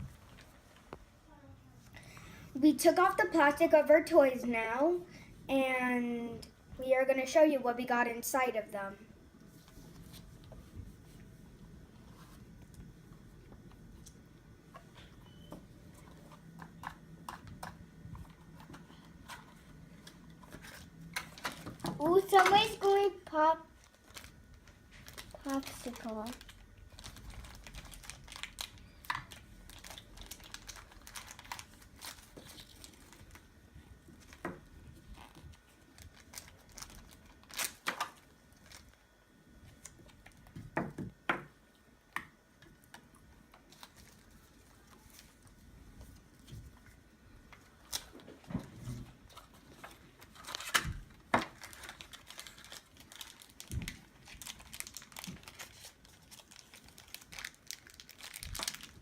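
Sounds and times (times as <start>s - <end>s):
plastic packaging crinkling: 16.0s - 40.6s, 42.8s - 46.6s, 47.5s - 48.6s, 49.2s - 59.0s.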